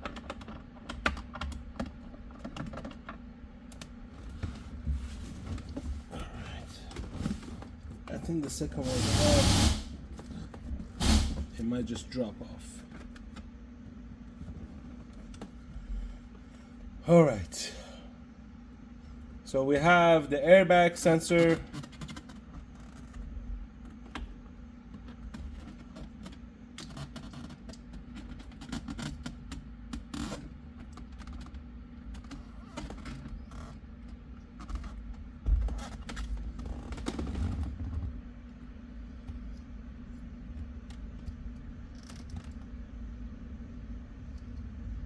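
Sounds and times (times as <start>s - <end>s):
steady low hum: 0.0s - 26.8s, 29.3s - 45.0s
loud knock: 11.0s - 11.5s.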